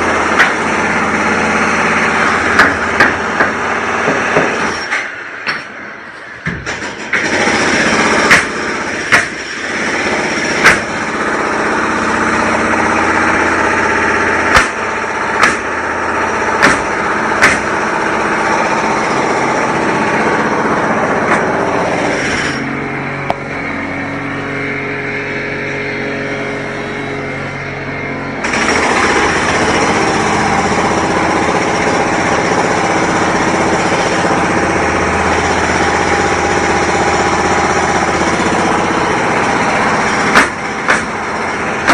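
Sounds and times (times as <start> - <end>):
construction machinery running: 0.0 - 41.9
sharp impact bangs: 14.4 - 15.8, 16.4 - 17.9.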